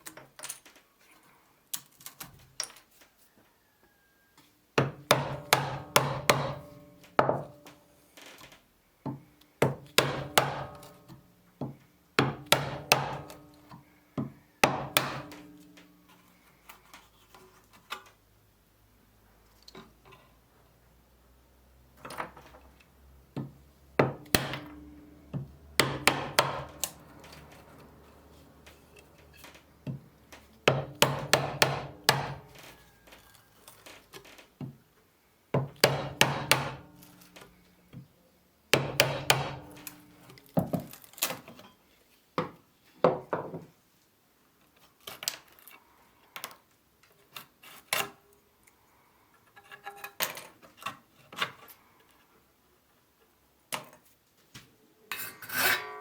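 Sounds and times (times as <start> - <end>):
hand tools knocking on a saw: 23.4 - 27.5.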